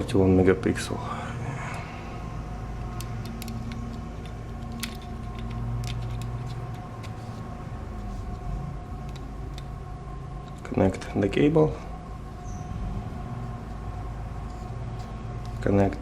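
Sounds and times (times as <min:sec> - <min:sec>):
faint constant tone: 0:00.0 - 0:16.0
low electrical hum: 0:00.0 - 0:16.0
clicks of small parts handled: 0:02.8 - 0:07.2.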